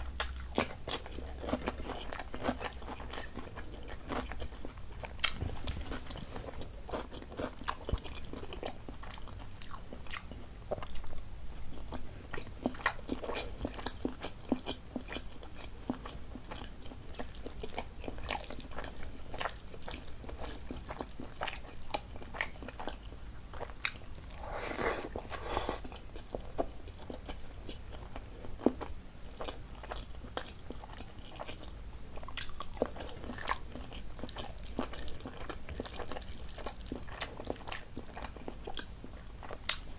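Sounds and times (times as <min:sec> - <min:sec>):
food crunching: 0:23.6 - 0:26.0
person chewing: 0:23.6 - 0:26.0
wet mouth clicks: 0:24.3 - 0:25.9.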